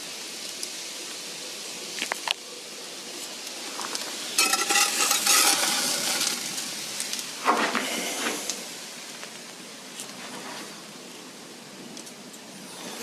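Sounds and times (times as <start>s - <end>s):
metal cookware scraping and clattering: 4.3s - 7.6s.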